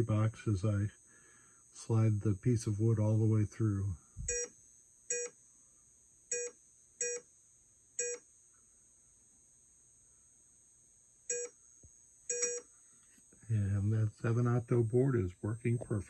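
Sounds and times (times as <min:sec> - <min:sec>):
short electronic beeps: 0:04.2 - 0:04.5, 0:12.3 - 0:12.6.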